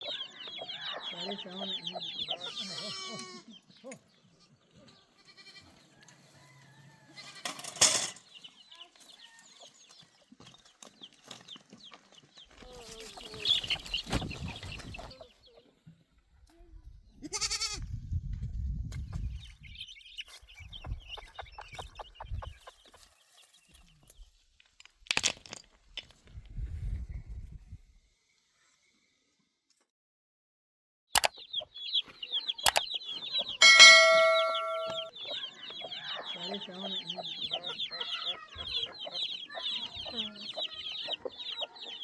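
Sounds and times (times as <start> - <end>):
chickens clucking: 0.0 - 16.1, 19.0 - 23.5, 31.2 - 42.0
goats bleating: 2.4 - 3.6, 5.2 - 5.8, 17.2 - 17.8.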